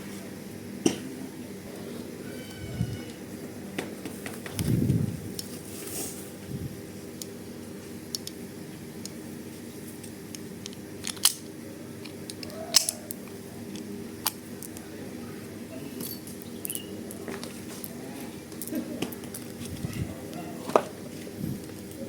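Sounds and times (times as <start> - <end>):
steady low hum: 0.0 - 22.0
plastic toy guns clicking: 12.3 - 13.0.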